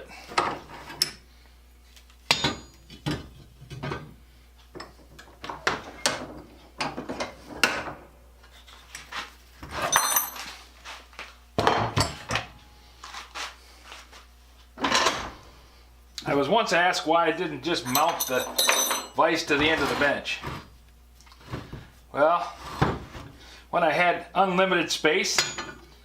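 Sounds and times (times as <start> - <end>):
metallic clanks of steel parts: 9.8 - 10.6, 17.8 - 19.2, 25.3 - 25.9.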